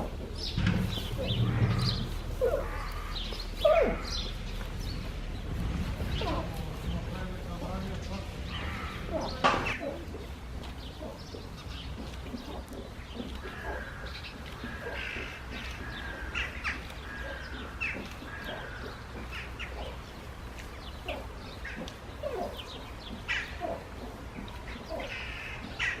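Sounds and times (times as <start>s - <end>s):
birds chirping and cawing: 0.0s - 26.0s
steady low hum: 0.1s - 18.8s.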